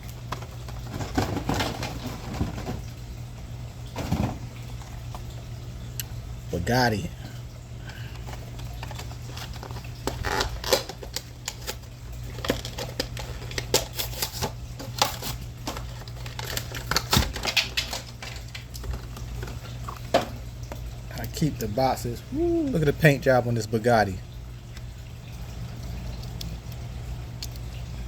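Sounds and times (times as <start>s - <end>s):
packaging crackling and snapping: 7.9s - 20.1s.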